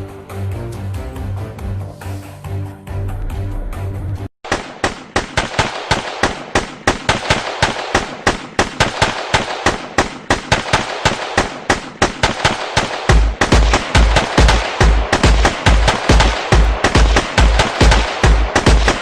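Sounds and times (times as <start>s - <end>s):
airsoft guns firing: 4.4s - 19.0s.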